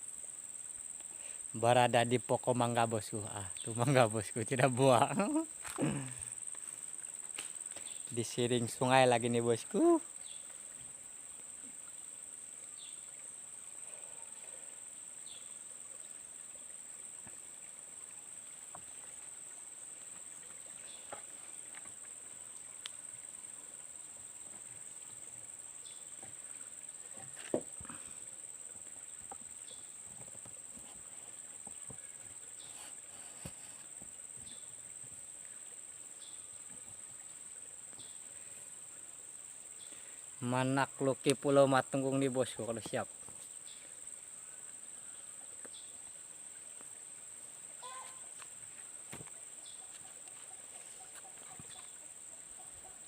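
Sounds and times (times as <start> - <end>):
high-pitched insect drone: 0.0 - 10.4.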